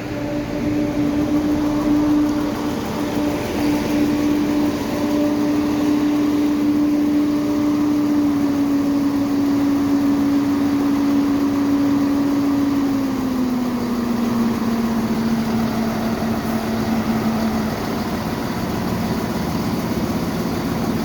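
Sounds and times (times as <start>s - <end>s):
broad rumbling noise: 0.0s - 8.7s
train diesel engine droning: 0.0s - 21.0s.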